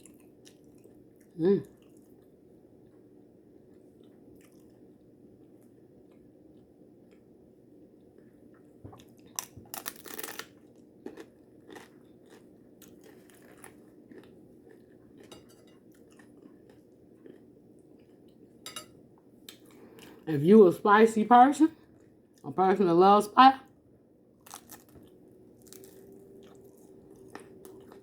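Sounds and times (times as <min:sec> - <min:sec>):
person chewing: 0:03.7 - 0:07.3, 0:08.5 - 0:18.8, 0:24.4 - 0:28.0
crunching bites of taco: 0:09.0 - 0:15.3, 0:24.4 - 0:28.0.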